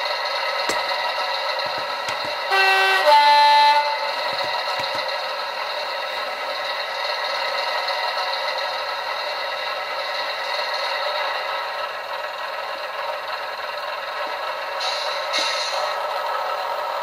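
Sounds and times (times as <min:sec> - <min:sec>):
diesel engine running: 0:00.0 - 0:17.0
two-tone train horn: 0:02.5 - 0:04.3.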